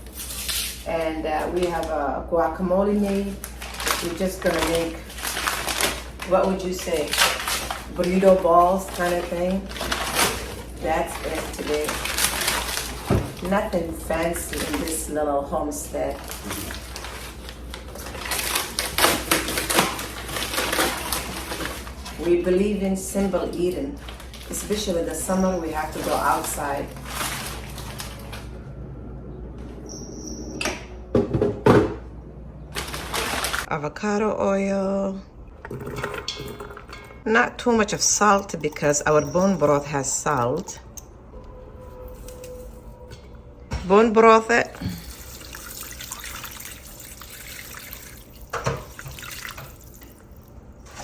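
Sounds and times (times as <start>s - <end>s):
cookware and cupboard knocks: 31.1s - 32.0s
liquid pouring into a pot: 35.6s - 37.2s, 44.8s - 50.6s.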